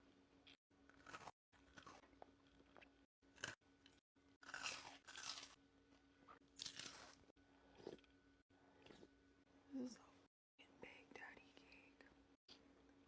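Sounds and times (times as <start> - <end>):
crunchy chewing: 0.4 - 5.6, 6.3 - 8.2.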